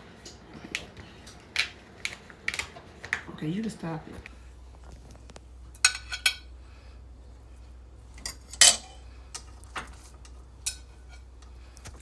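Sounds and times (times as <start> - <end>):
cutlery clinking against dishes: 5.8 - 6.5, 8.2 - 9.5.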